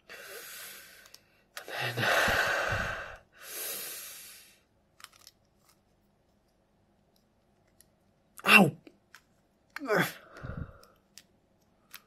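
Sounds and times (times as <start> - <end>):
faint clicks: 1.0 - 1.7
pained breath out: 1.8 - 4.6, 9.8 - 11.0
sharp breath in: 2.0 - 4.6.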